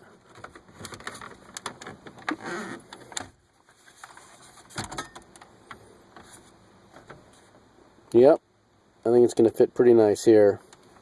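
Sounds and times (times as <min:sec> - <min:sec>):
plastic clicks and scraping: 0:00.3 - 0:06.3.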